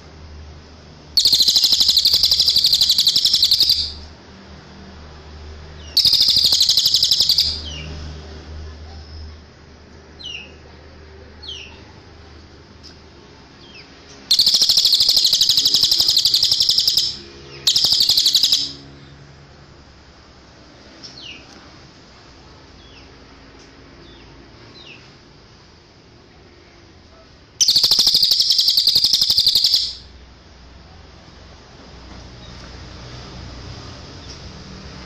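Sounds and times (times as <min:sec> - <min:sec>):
bird chirps: 0:01.2 - 0:04.0, 0:05.8 - 0:07.9, 0:13.6 - 0:19.1, 0:27.6 - 0:30.1
songbird trilling: 0:01.2 - 0:04.0, 0:05.8 - 0:07.8, 0:13.7 - 0:18.9, 0:27.6 - 0:30.1.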